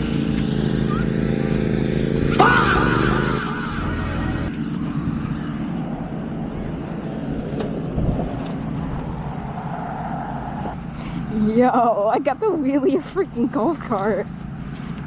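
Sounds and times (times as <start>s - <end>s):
riding lawn mower engine running: 0.0s - 9.7s, 10.6s - 11.5s, 12.5s - 15.0s
noisy rush: 0.0s - 11.0s.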